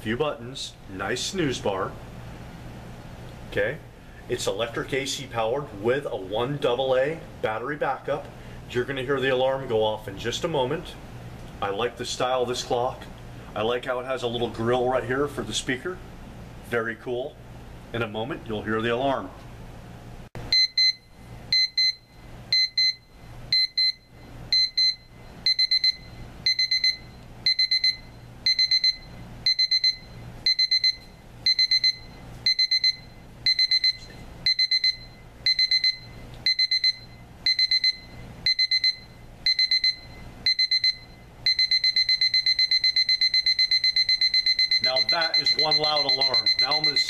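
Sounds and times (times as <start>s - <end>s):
alarm clock beeping: 20.5s - 47.0s.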